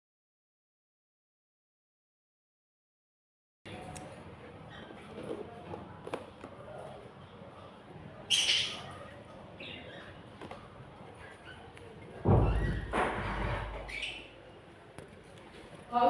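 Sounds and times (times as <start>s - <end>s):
baby birds squawking: 8.3s - 10.2s
loud thump: 12.2s - 13.9s.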